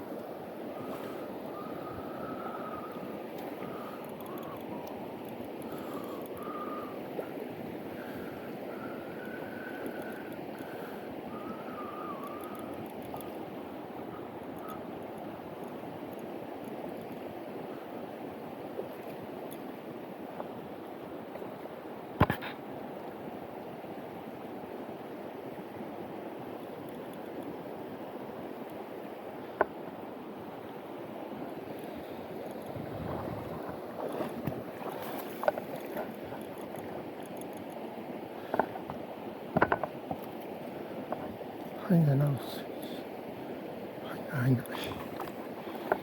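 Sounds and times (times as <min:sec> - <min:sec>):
stream water rushing: 0:00.0 - 0:46.0
faint ticks: 0:03.3 - 0:06.6, 0:08.0 - 0:13.4, 0:14.1 - 0:17.3, 0:26.8 - 0:27.5, 0:31.7 - 0:32.8, 0:33.5 - 0:37.8.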